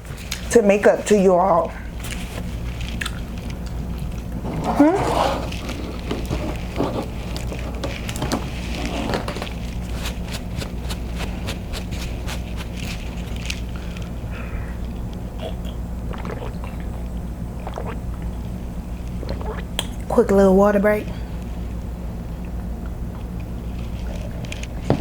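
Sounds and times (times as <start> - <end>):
steady low hum: 0.0 - 25.0
chewing and lip smacking: 2.0 - 4.4.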